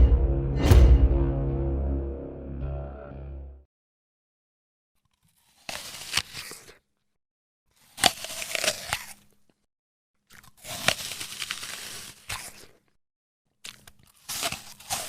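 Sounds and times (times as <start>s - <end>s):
crunchy food being chewed: 7.7s - 9.6s, 10.2s - 15.0s.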